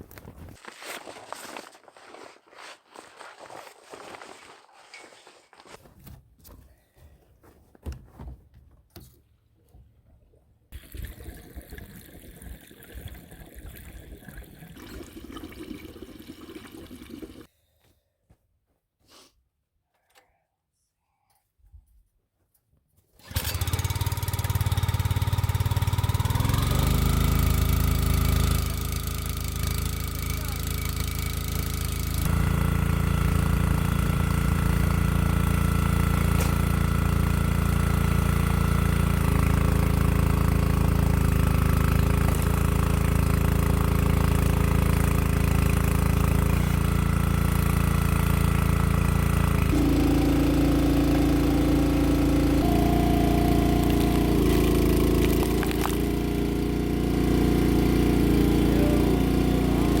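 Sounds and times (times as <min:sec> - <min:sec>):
log splitter engine running: 0:23.2 - 1:00.0.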